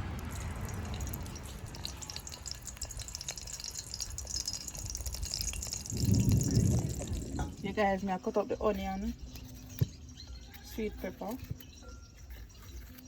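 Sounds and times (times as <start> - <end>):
garlic sizzling in hot oil: 0.0 - 7.8
low rumble: 4.9 - 8.4.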